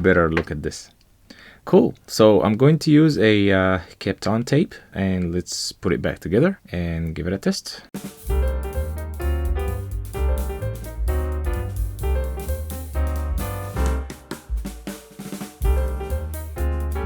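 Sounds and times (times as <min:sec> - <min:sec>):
drum-kit beat: 0:08.0 - 0:17.0
piano: 0:08.0 - 0:17.0.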